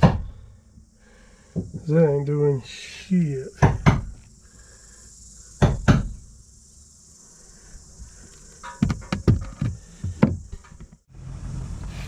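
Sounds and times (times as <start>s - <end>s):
sharp knocks: 0.0s - 0.3s, 3.6s - 4.2s, 5.6s - 6.2s, 8.6s - 10.9s
steady high hiss: 0.0s - 12.0s.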